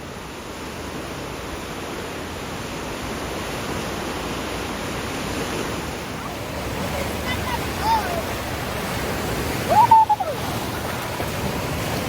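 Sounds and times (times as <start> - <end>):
running splashing water: 5.6 - 12.0.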